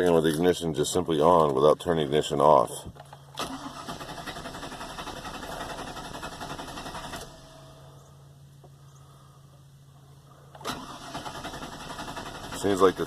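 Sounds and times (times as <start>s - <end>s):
faint steady hum: 0.0s - 13.0s
starter motor cranking: 3.4s - 7.6s, 10.5s - 13.0s.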